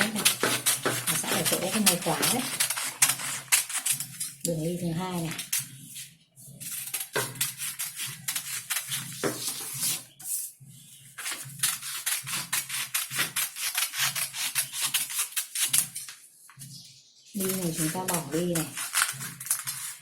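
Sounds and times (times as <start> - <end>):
scissors cutting fabric: 0.0 - 4.5, 11.2 - 16.1, 17.4 - 20.0.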